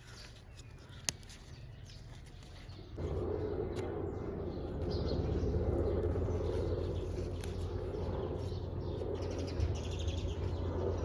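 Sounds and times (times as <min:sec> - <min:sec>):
small birds chirping: 0:00.0 - 0:11.0
steady rushing noise: 0:03.0 - 0:11.0.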